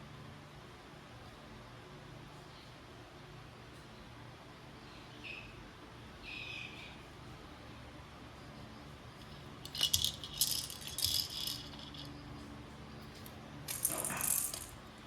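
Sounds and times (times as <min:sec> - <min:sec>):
rattling: 0:09.6 - 0:12.2, 0:13.7 - 0:14.8.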